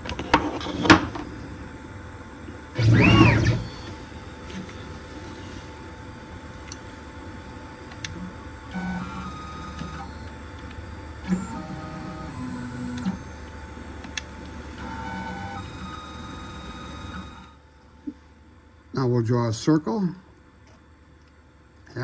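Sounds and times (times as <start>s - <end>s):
stepper motors whining: 2.7s - 4.7s, 8.1s - 10.4s, 11.2s - 17.6s.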